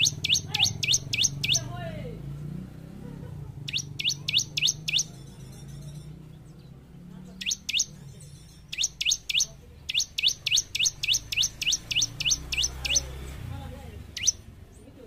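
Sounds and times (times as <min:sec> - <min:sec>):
bird singing high notes: 0:00.0 - 0:01.7, 0:03.7 - 0:05.1, 0:07.4 - 0:08.0, 0:08.7 - 0:13.1, 0:14.2 - 0:14.4.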